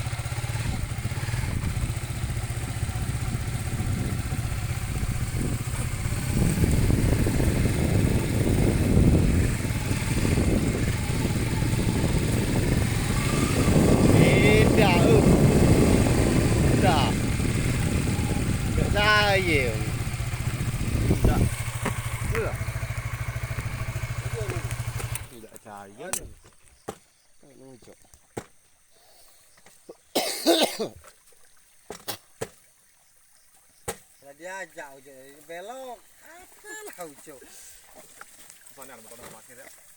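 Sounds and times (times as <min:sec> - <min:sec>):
motorcycle engine running: 0:00.0 - 0:25.5
sharp clicks: 0:24.4 - 0:26.3
person coughing: 0:30.1 - 0:31.0.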